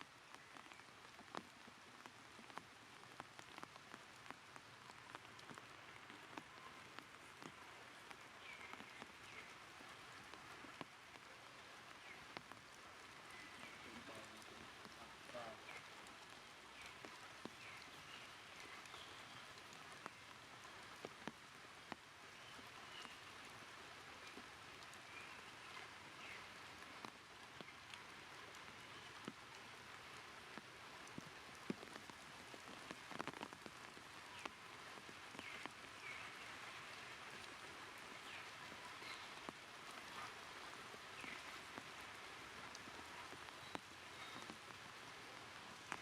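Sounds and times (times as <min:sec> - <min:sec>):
faint steady hiss: 0:00.0 - 0:46.0.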